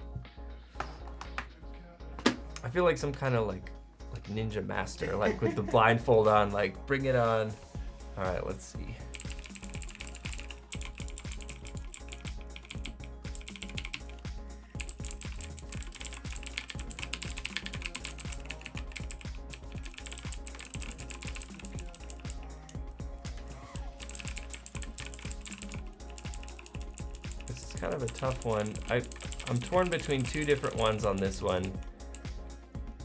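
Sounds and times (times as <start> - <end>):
clicky mechanical keyboard typing: 9.2 - 14.2, 14.8 - 22.8, 24.0 - 31.9.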